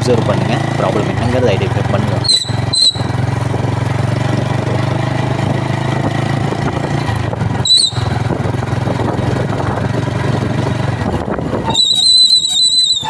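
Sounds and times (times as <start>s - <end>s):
motorcycle engine humming: 0.0s - 13.0s
drum brake squealing: 2.2s - 3.1s, 7.6s - 8.2s, 11.6s - 13.0s.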